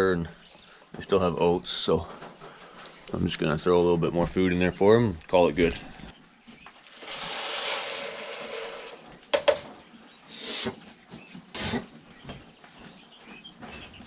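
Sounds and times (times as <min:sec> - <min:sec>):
rustling: 0:06.7 - 0:09.7
feed pouring into feeder: 0:06.9 - 0:09.6
sharp knocks: 0:09.3 - 0:09.7.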